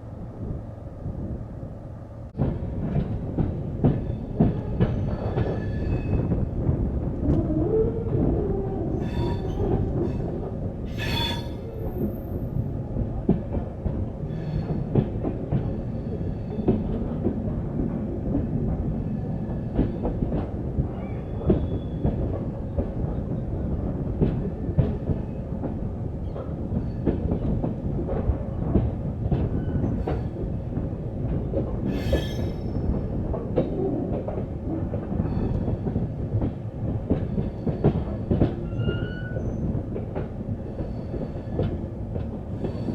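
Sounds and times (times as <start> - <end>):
train wheels rumbling and clacking: 0.0 - 42.9
wheel flange screeching: 8.9 - 11.6.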